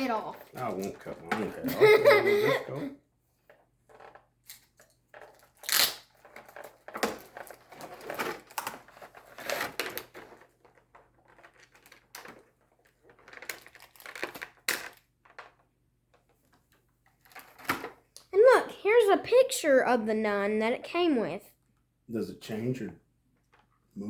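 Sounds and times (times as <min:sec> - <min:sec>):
toy packaging being torn open: 0:05.3 - 0:15.1.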